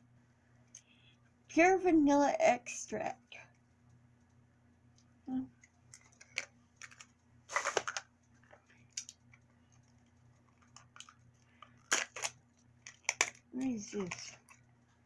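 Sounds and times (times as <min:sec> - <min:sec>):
plastic packaging clicks: 0:05.9 - 0:09.4, 0:10.5 - 0:14.6
plastic packaging crinkling: 0:05.9 - 0:14.7.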